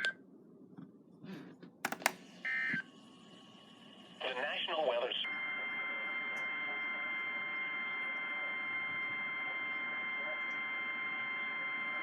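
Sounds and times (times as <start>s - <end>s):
radio static hiss: 4.2s - 5.2s
steady high alarm tone: 5.2s - 12.0s.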